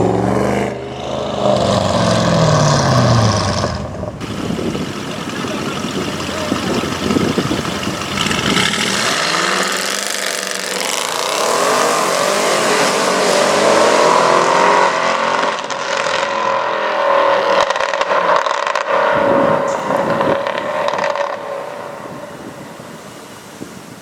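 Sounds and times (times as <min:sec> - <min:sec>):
car engine accelerating: 0:00.0 - 0:22.1
low exhaust rumble: 0:02.0 - 0:09.2.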